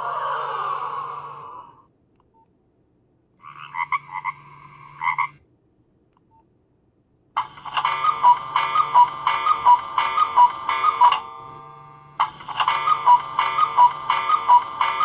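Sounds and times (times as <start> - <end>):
faint steady hum: 0.0 - 15.0
monophonic phone ringtones: 7.4 - 15.0.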